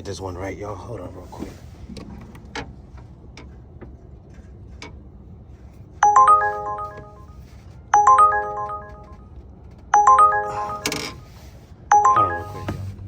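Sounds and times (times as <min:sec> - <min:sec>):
phone ringtone chime melody: 0:06.0 - 0:09.3, 0:10.0 - 0:11.3, 0:11.9 - 0:13.0.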